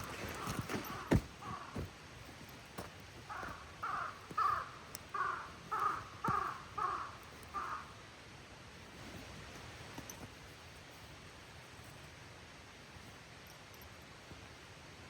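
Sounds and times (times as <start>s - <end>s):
crow cawing: 0.2s - 1.9s, 3.2s - 8.0s.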